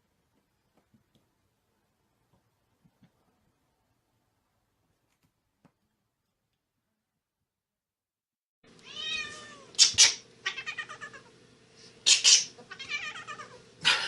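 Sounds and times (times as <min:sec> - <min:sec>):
steady background hum: 0:08.7 - 0:14.0
cat meowing: 0:08.8 - 0:11.3, 0:12.6 - 0:13.6.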